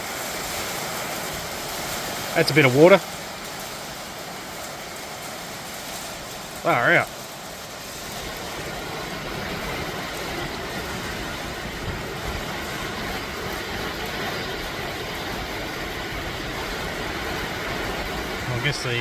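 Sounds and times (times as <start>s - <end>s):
heavy rain pouring: 0.0s - 19.0s.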